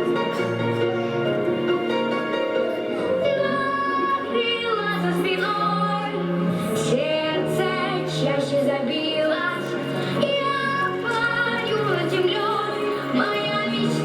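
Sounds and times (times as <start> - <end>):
instrumental accompaniment: 0.0 - 14.0
woman singing: 3.0 - 14.0.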